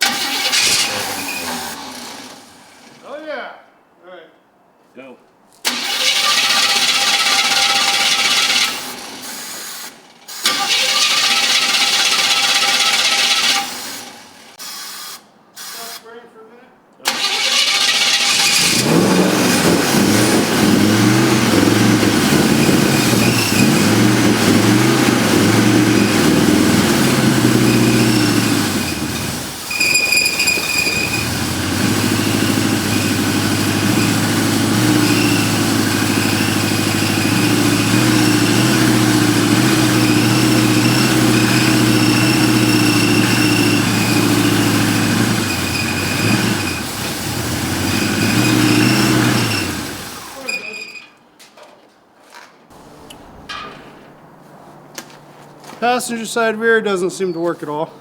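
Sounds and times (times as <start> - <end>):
pickup truck engine revving: 0.0 - 3.0, 5.6 - 14.6, 17.1 - 50.4.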